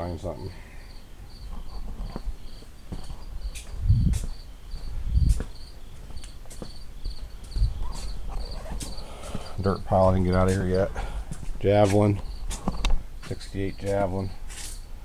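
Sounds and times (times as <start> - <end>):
cricket chirping: 0.5 - 11.5, 12.2 - 15.0
low thumps: 3.0 - 5.6, 7.1 - 13.1.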